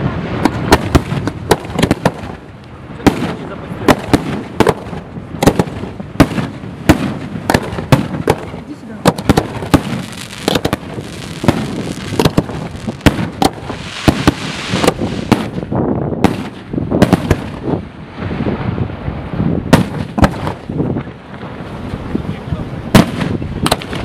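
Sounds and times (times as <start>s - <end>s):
fireworks bangs and pops: 0.0s - 18.7s, 19.3s - 22.2s, 22.9s - 24.0s
fireworks crackling: 0.0s - 18.7s, 19.7s - 22.3s.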